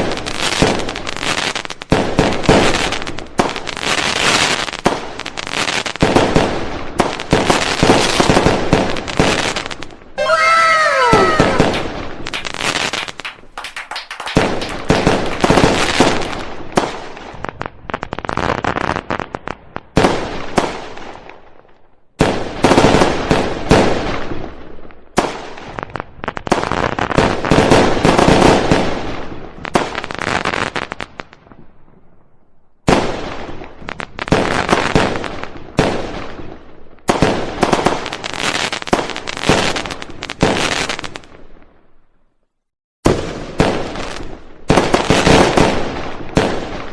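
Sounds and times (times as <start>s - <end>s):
fireworks bangs and crackles: 0.0s - 41.9s, 43.0s - 46.9s.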